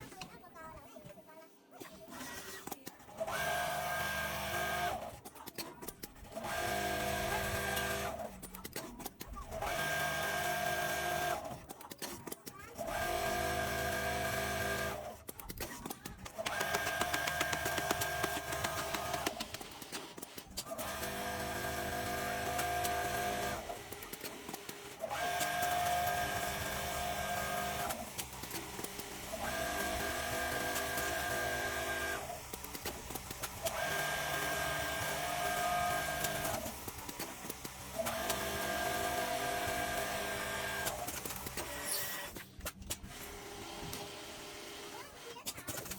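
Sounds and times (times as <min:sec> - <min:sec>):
sewing machine stitching: 0:02.0 - 0:45.9
clicks and rattles: 0:11.5 - 0:12.9.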